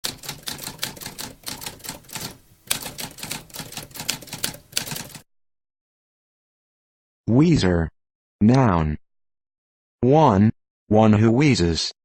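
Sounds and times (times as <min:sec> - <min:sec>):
typewriter key strikes: 0:00.0 - 0:05.2.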